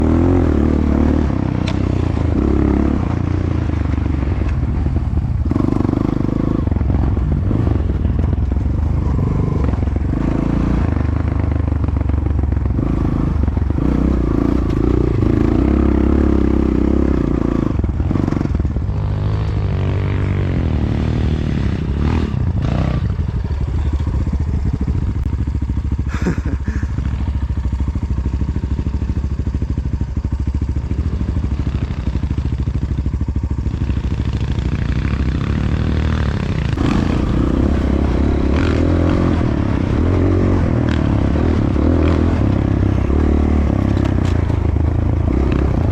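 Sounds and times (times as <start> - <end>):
motorcycle engine revving: 0.0 - 45.9
knocks and clatter from bike: 42.0 - 45.9.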